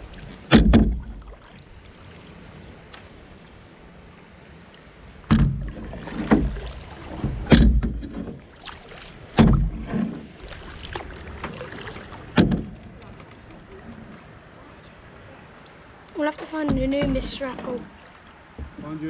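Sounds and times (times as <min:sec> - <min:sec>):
paddle splashes and knocks: 0:00.0 - 0:02.2, 0:05.2 - 0:15.0, 0:16.2 - 0:19.0.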